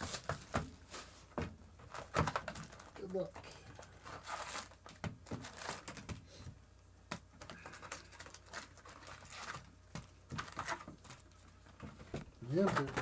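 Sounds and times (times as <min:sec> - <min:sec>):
wrappers crinkling and tearing: 0:01.9 - 0:06.1, 0:07.4 - 0:09.8, 0:10.4 - 0:11.2.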